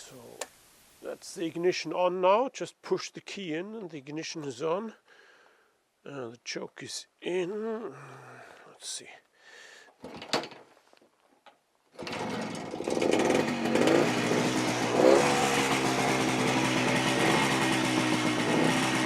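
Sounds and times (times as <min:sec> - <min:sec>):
two-stroke motorcycle engine revving: 0:12.0 - 0:19.0.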